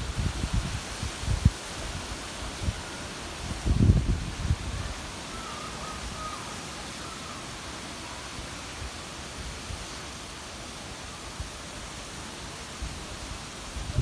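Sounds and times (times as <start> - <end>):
wind gusts buffeting microphone: 0.0 - 5.2, 13.7 - 14.0
wind rustling leaves: 0.0 - 14.0.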